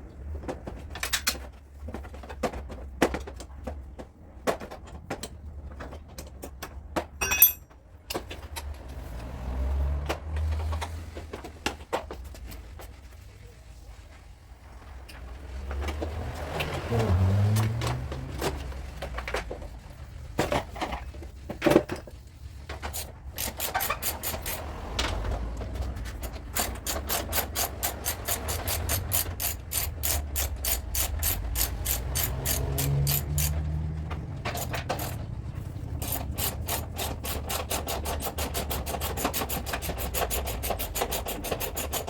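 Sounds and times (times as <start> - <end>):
hand tool clicking: 22.9 - 24.6, 26.1 - 33.6, 34.5 - 35.2, 35.9 - 42.0.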